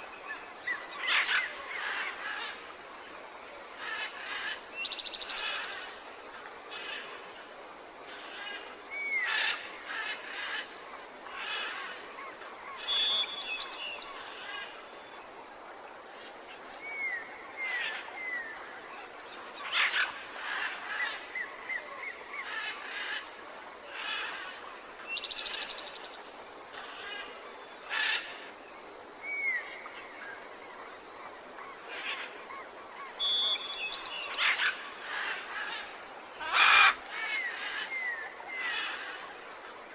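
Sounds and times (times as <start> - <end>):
steady background hiss: 0.0 - 39.9
birds calling and trilling: 31.8 - 39.4.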